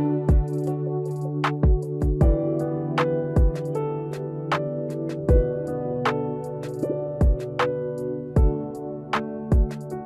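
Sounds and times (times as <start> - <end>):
kick drum: 0.3 - 0.6, 1.6 - 2.5, 3.4 - 3.8, 5.3 - 5.5, 7.2 - 7.5, 8.4 - 8.7, 9.5 - 9.9.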